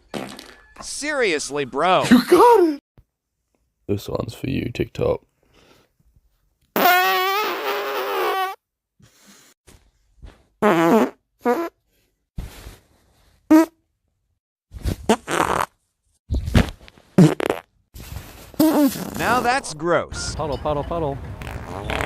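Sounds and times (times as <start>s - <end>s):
person farting: 0.0s - 0.6s, 6.8s - 8.6s, 10.6s - 11.8s, 13.5s - 13.8s, 14.9s - 15.8s, 16.5s - 17.7s, 18.6s - 19.5s, 21.4s - 22.0s.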